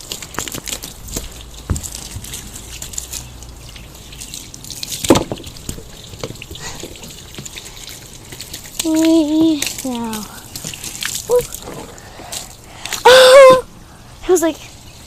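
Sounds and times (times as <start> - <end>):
garden hose water splashing: 0.0 - 15.0.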